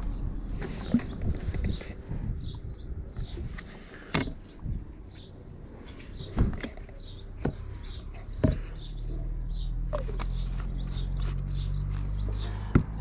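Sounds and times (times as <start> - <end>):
small bird chirping: 4.3 - 13.0.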